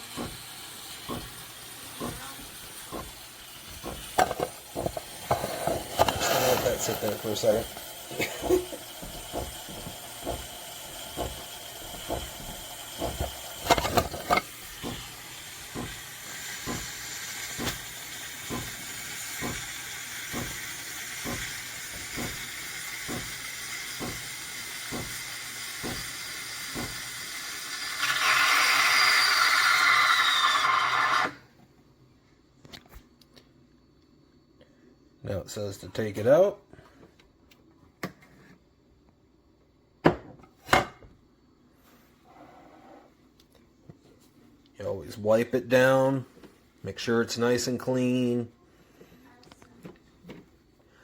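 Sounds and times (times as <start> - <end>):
steam wand hissing: 0.0 - 31.4.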